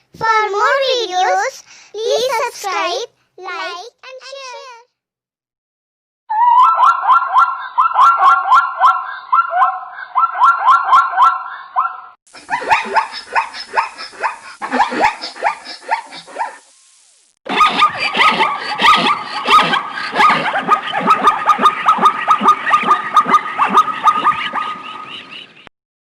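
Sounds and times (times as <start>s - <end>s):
zebra barking calls: 6.6s - 16.6s, 17.5s - 25.6s.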